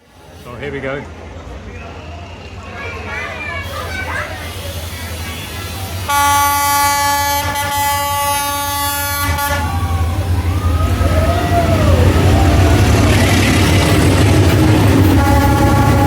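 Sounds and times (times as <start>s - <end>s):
train rumble: 0.0s - 16.0s
train horn blast: 6.1s - 10.1s, 14.7s - 16.0s.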